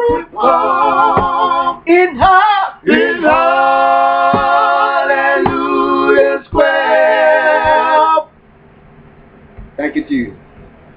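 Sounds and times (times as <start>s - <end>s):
male vocal group singing harmony: 0.0s - 8.3s
sharp tap on the beat: 1.1s - 1.4s, 4.2s - 4.7s, 5.4s - 5.7s, 9.5s - 9.8s.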